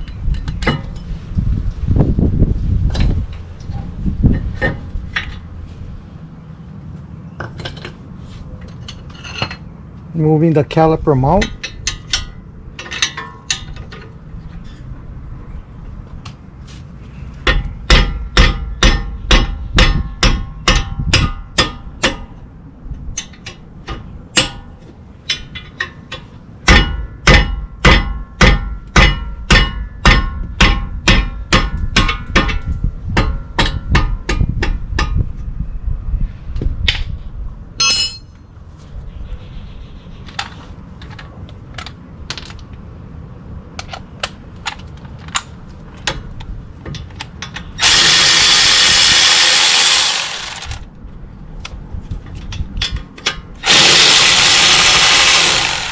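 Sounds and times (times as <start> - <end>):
hammer striking steel: 17.5 - 22.3, 37.8 - 38.4
bright metal clang: 37.8 - 38.5.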